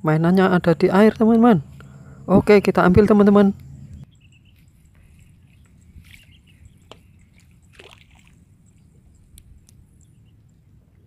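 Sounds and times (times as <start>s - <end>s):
water sloshing and dripping: 6.0s - 9.7s.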